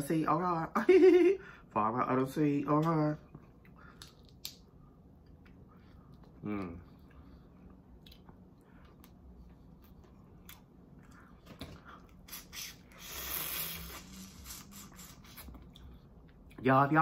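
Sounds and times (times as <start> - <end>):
person chewing prawn: 5.2 - 16.6.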